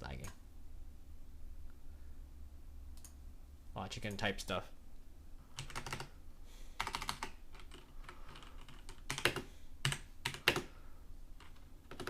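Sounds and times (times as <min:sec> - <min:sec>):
mechanical keyboard typing: 0:05.6 - 0:06.1, 0:06.8 - 0:10.7, 0:11.4 - 0:12.0.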